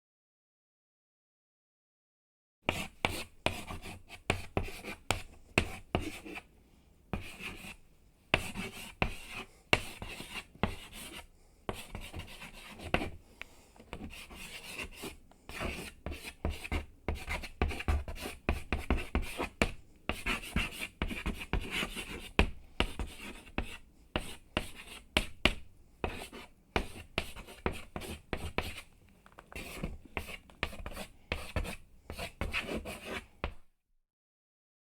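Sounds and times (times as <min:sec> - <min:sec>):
chalk tapping on board: 0:02.7 - 0:06.4, 0:08.4 - 0:13.2, 0:13.9 - 0:28.9, 0:29.5 - 0:33.6
chalk scratching on blackboard: 0:02.7 - 0:06.5, 0:07.2 - 0:13.2, 0:13.9 - 0:28.9, 0:29.6 - 0:33.6.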